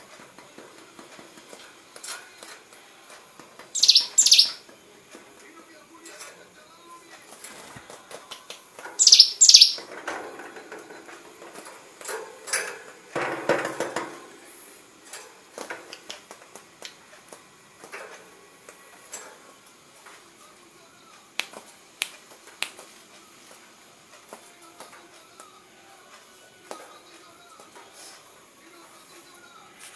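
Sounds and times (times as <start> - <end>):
bird high sweeping notes: 3.8 - 4.6, 9.0 - 9.9
light clicks and taps: 15.1 - 19.4, 21.3 - 27.9.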